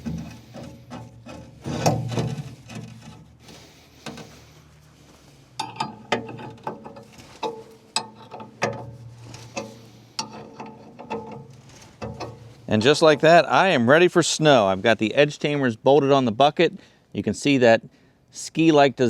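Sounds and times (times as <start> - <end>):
metal clinking: 5.6 - 13.2.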